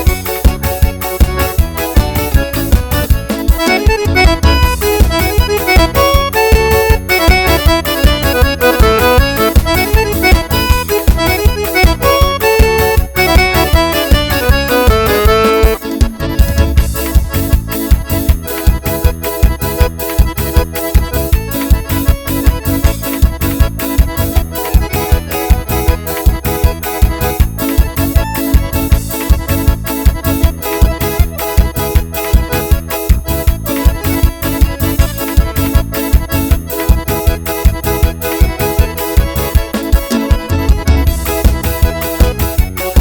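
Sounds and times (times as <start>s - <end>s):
fast accordion dance music: 0.0s - 43.0s.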